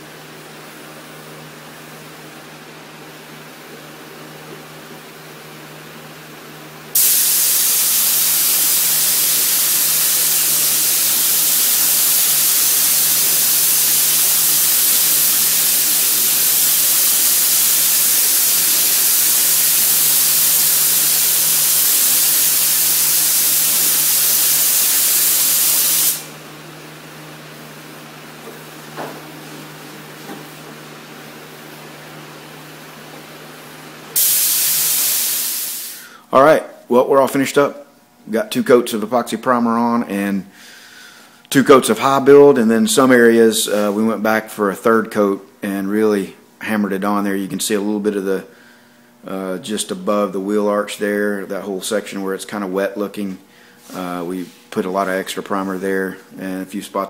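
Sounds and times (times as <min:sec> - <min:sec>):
paint spray gun hissing: 0:07.0 - 0:26.4, 0:34.1 - 0:36.1.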